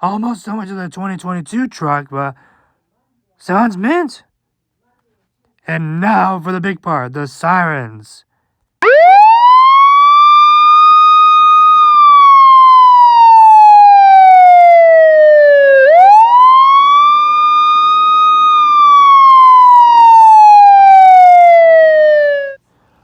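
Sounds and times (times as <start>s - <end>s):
toy electronic wailing siren: 8.8s - 22.6s.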